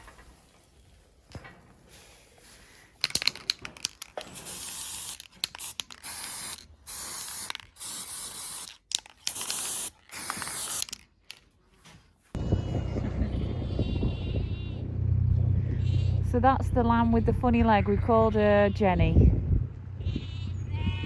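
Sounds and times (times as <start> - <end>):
spray can clicks: 3.0 - 11.4
aerosol spray can hissing: 4.3 - 11.0.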